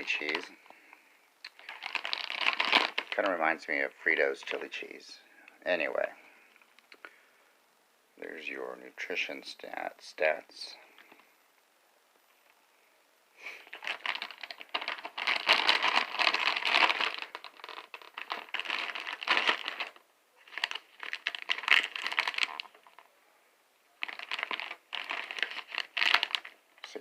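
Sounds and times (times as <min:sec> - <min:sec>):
chip bag crinkling: 0:00.0 - 0:00.6, 0:01.5 - 0:03.6, 0:13.5 - 0:23.1, 0:24.0 - 0:27.0.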